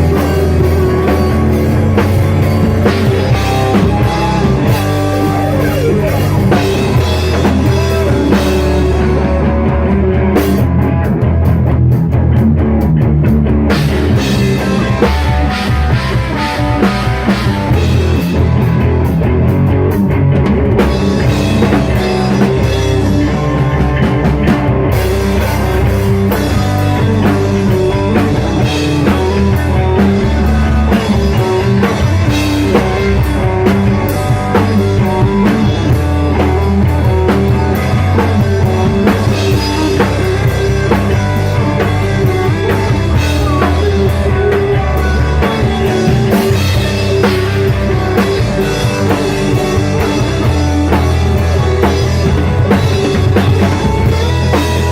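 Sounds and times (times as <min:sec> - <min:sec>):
rock music on drums and guitar: 0:00.0 - 0:54.9.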